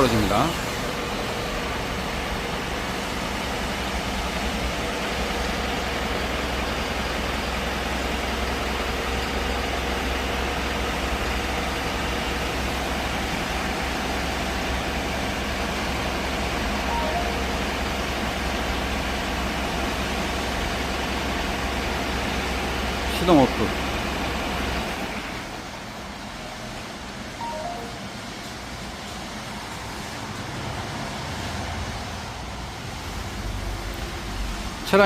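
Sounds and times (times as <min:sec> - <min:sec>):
diesel engine idling: 0:00.0 - 0:26.6.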